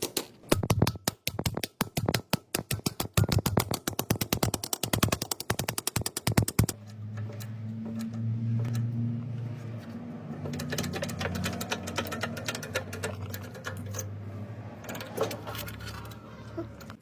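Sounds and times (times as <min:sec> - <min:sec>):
rapid mechanical impacts: 0:00.0 - 0:08.8, 0:10.4 - 0:14.1
mechanical ticking: 0:00.5 - 0:08.9, 0:10.4 - 0:14.2.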